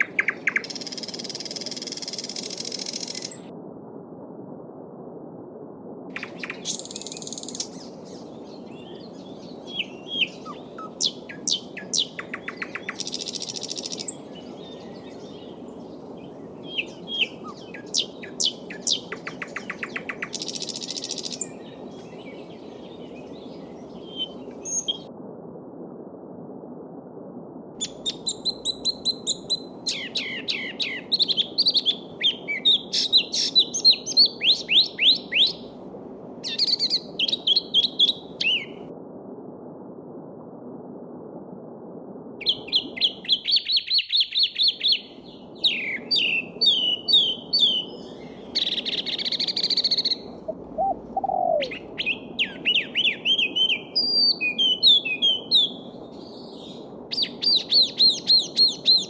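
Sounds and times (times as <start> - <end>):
songbirds chirping: 6.2 - 25.1, 27.8 - 35.8, 42.4 - 59.0.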